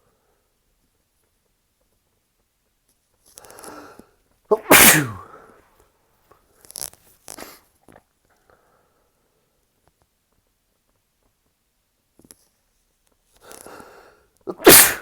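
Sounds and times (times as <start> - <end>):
breathy in-breath: 3.4 - 4.2, 13.4 - 14.3
person sneezing: 4.5 - 5.4, 14.5 - 15.0.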